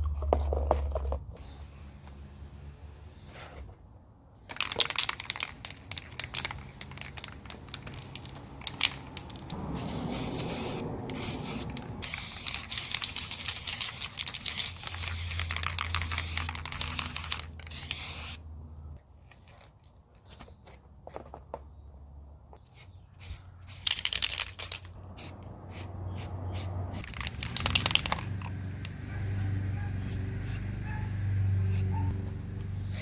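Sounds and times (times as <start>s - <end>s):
spray paint can hissing: 4.5s - 18.4s, 22.7s - 33.0s.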